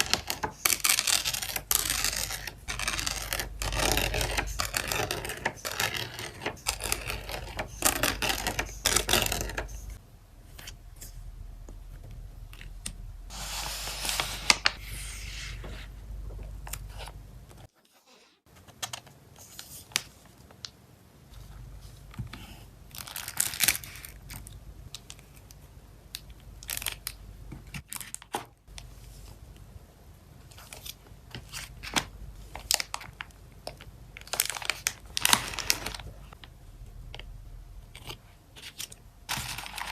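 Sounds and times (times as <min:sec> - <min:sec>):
plastic and paper crinkling: 0:00.0 - 0:10.0, 0:30.5 - 0:36.5, 0:37.9 - 0:39.9.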